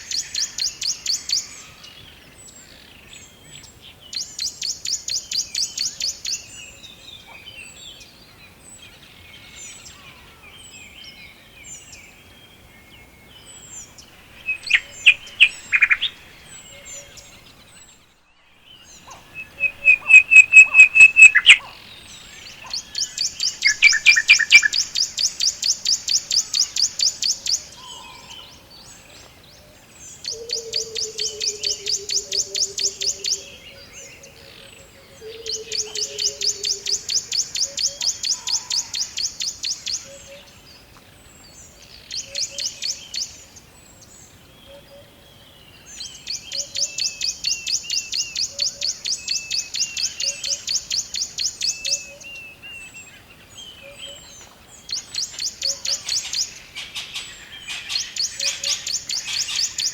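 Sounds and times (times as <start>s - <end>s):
loud bird chirps: 13.6s - 28.6s, 54.9s - 59.9s
rapid high bird trills: 14.2s - 17.4s, 19.1s - 26.9s.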